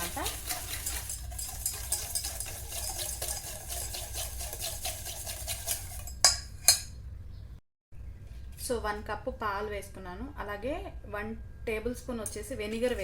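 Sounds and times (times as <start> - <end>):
whisk scraping in a bowl: 0.0 - 6.9.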